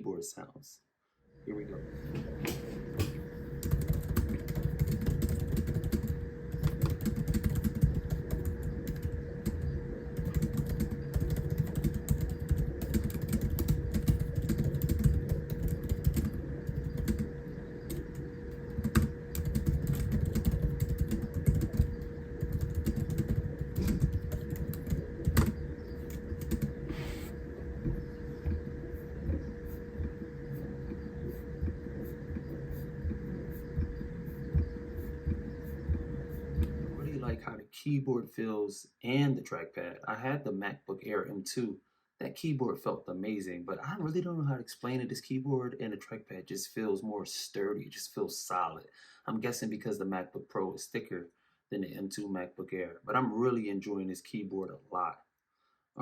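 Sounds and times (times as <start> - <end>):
laptop keyboard typing: 3.0 - 17.3, 17.9 - 36.8.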